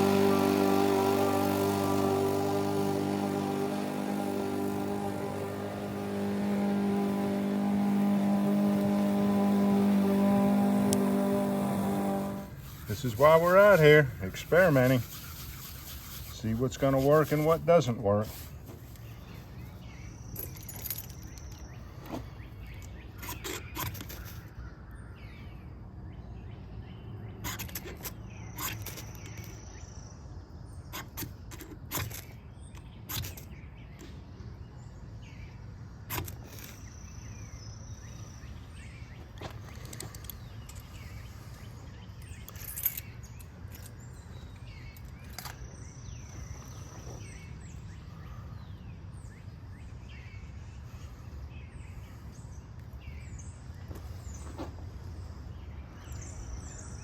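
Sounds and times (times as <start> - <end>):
steady low hum: 0.0 - 16.5.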